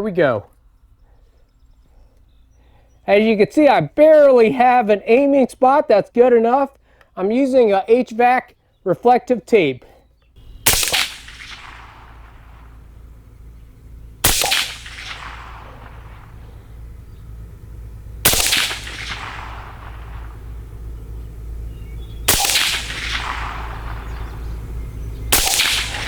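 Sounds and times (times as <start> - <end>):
suppressed pistol shots with echo: 10.4 - 26.0.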